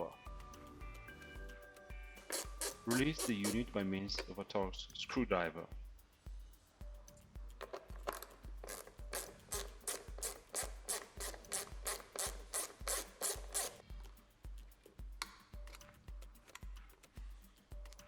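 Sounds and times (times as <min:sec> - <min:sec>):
low background music beat: 0:00.0 - 0:18.0
screwdriver rasping strokes: 0:02.2 - 0:18.0.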